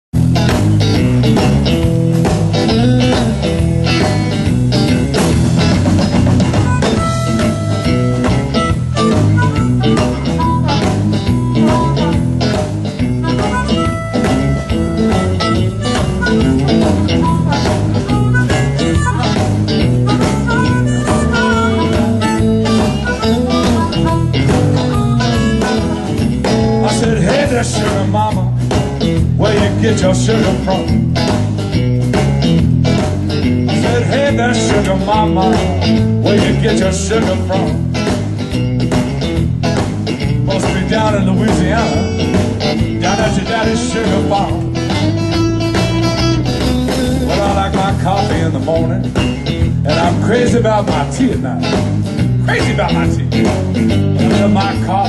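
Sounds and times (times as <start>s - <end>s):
blues band playing: 0.1s - 55.0s
harmonica: 6.4s - 27.2s, 41.5s - 47.7s.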